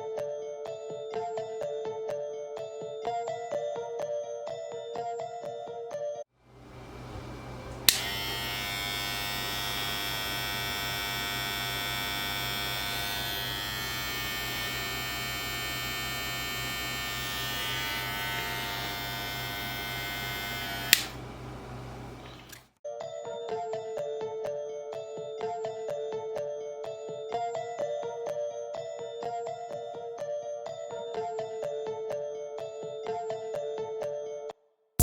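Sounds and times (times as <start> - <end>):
hair clipper humming: 6.5 - 22.7
hair clipper switch click: 7.7 - 21.2, 22.2 - 22.6.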